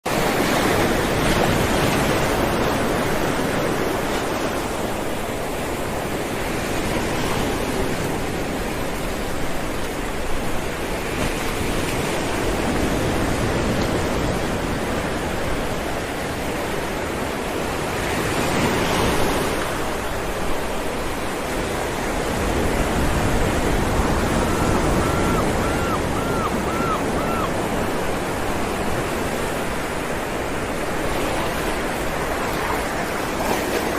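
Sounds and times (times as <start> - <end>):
ocean waves breaking on rocks: 0.1 - 33.9.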